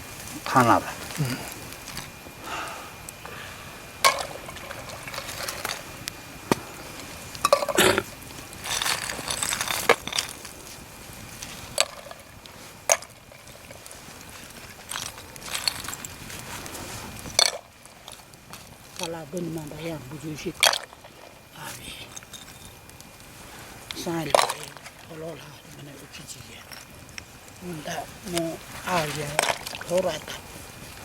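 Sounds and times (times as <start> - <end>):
rustling: 0.0 - 31.0
clicks and knocks of objects: 4.0 - 10.6, 11.4 - 19.2, 24.2 - 25.1, 28.3 - 30.0.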